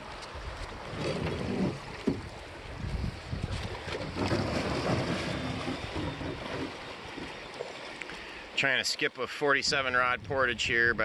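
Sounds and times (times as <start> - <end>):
wind buffeting microphone: 0.4 - 6.8.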